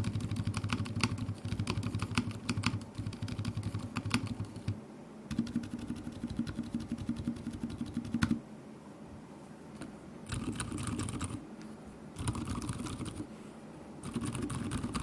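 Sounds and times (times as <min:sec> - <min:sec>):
quiet mechanical keyboard typing: 0:00.0 - 0:08.4, 0:10.3 - 0:11.4, 0:12.2 - 0:13.3, 0:14.0 - 0:15.0.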